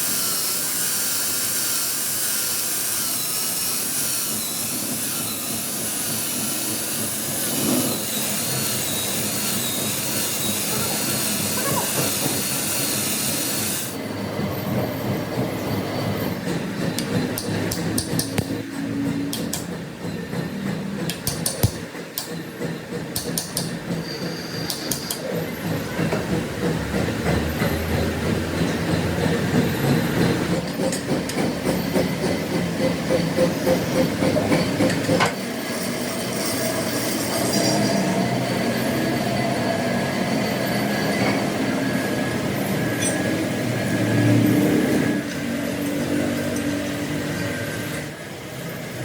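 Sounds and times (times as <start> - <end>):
metalworking machinery clattering: 4.9 - 49.0.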